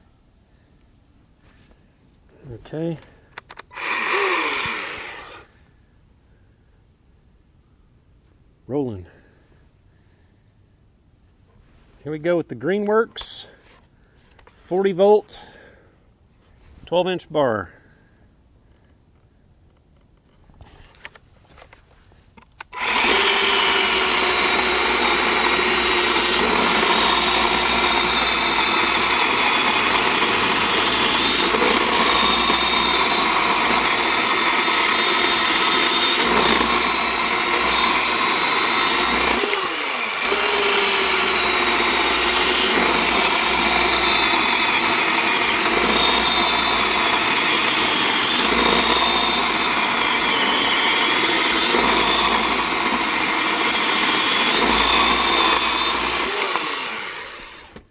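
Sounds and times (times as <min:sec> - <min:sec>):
electric chainsaw cutting log: 0:03.7 - 0:05.5, 0:22.6 - 0:57.9.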